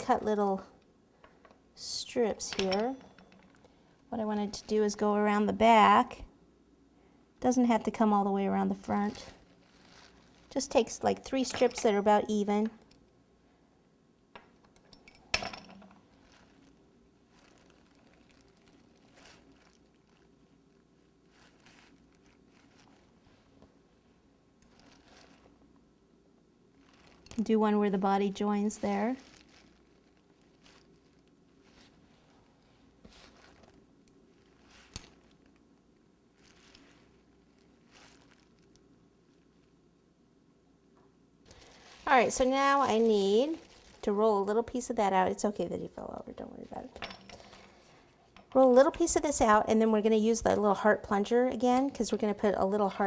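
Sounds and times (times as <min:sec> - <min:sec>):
faint rustles: 0:09.0 - 0:10.7, 0:16.0 - 0:25.7, 0:28.6 - 0:35.6, 0:36.3 - 0:39.8, 0:41.5 - 0:48.4.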